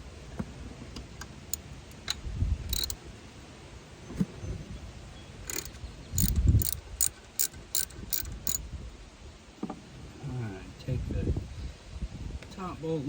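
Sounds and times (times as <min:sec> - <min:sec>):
metal hand tools clicking: 0:01.5 - 0:03.0, 0:05.5 - 0:08.6
ratchet wrench clicking: 0:01.5 - 0:03.0, 0:05.4 - 0:08.6.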